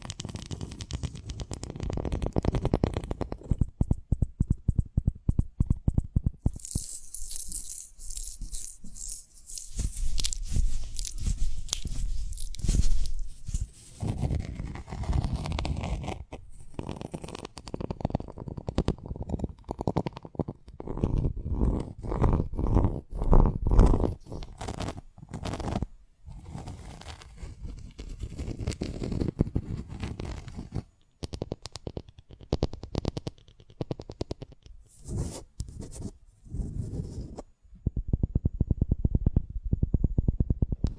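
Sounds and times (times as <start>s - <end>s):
small clicks and tearing: 0.0s - 3.6s, 6.5s - 21.6s
seed pod crackling and rubbing: 6.4s - 18.7s.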